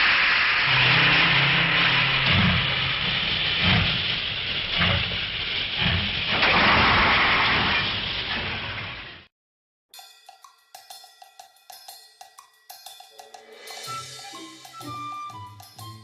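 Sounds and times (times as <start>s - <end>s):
slow locomotive chuffs: 0.0s - 6.7s, 13.5s - 16.0s
steam locomotive hissing: 0.0s - 6.8s, 13.2s - 16.0s.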